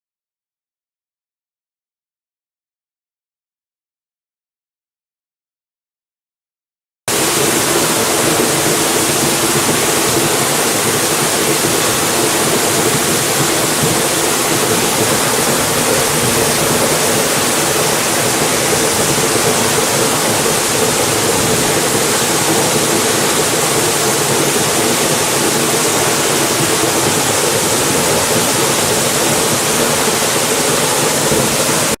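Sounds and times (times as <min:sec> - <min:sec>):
waterfall rushing: 0:07.1 - 0:32.0.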